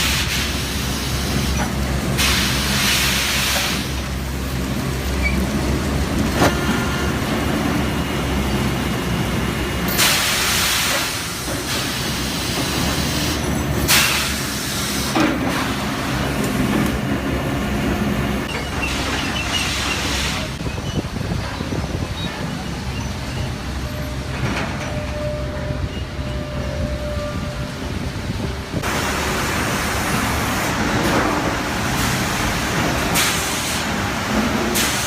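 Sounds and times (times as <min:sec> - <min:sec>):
loud rushing noise: 0:27.9 - 0:35.0.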